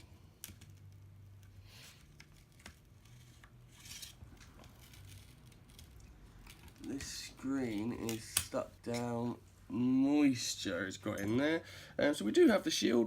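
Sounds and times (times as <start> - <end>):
hands and tools handling noise: 0.0 - 9.3
low steady hum: 0.0 - 13.0.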